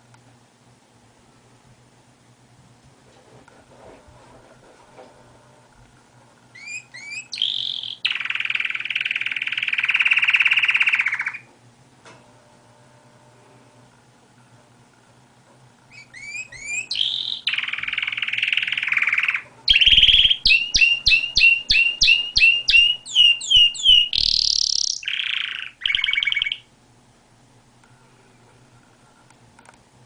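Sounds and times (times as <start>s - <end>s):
canary singing: 6.5s - 11.5s, 15.9s - 26.7s.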